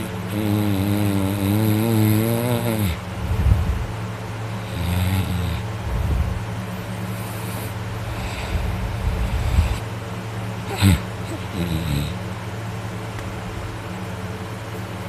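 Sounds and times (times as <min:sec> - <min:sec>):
person snoring loudly: 0:00.0 - 0:03.5, 0:04.6 - 0:06.3, 0:07.1 - 0:09.9, 0:10.6 - 0:12.2
rough breathing: 0:07.0 - 0:09.9, 0:10.6 - 0:12.2.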